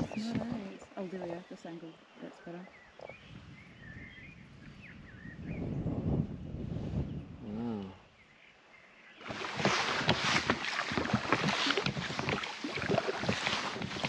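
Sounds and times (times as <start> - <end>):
wind: 0.0 - 14.0
splashing water: 9.2 - 14.0.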